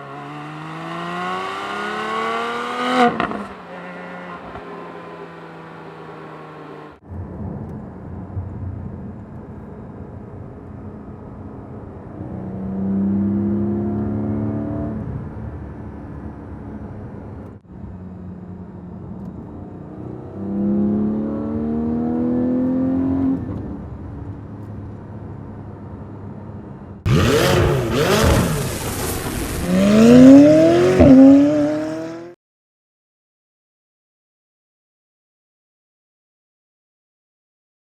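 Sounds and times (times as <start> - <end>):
car engine revving: 0.0 - 7.0, 12.1 - 17.5, 19.1 - 23.9, 27.0 - 32.4.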